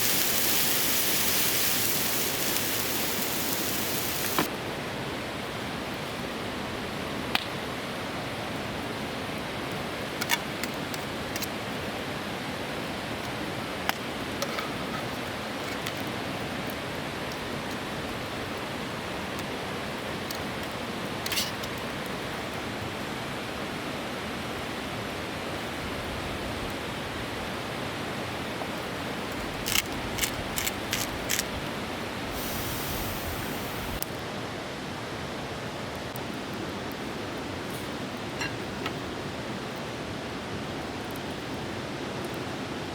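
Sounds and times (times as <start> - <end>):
river flowing: 0.0 - 4.5.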